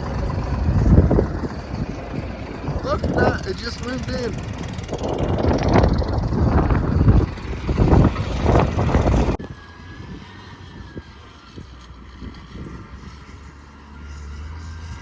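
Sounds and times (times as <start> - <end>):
steady low rumble: 0.0 - 9.6
gusting wind buffeting microphone: 0.0 - 15.0.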